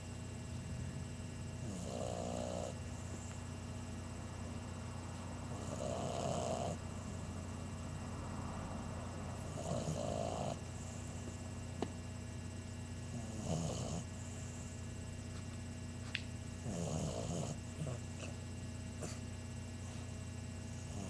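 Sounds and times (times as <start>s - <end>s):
puppy snoring: 1.5s - 3.4s, 5.4s - 7.3s, 9.4s - 11.4s, 13.0s - 14.9s, 16.6s - 20.1s, 20.7s - 21.0s.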